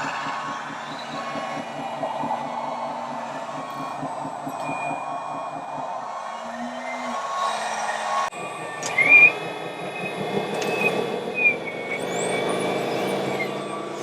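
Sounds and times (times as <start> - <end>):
high motor whine: 0.0 - 14.0
model truck mechanical noise: 6.4 - 14.0.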